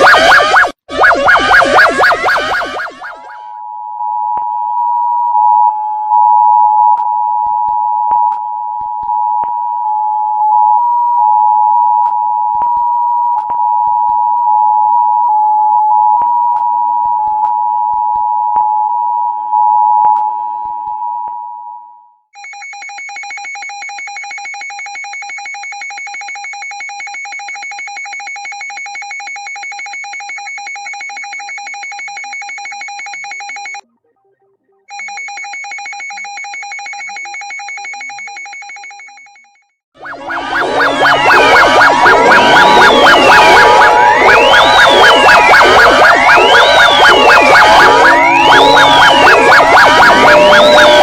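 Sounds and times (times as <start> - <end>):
two-note electronic attention tone: 0.0 - 3.6, 40.0 - 51.0
pulsing ringing alarm tone: 0.0 - 20.1, 22.4 - 33.8, 34.9 - 51.0.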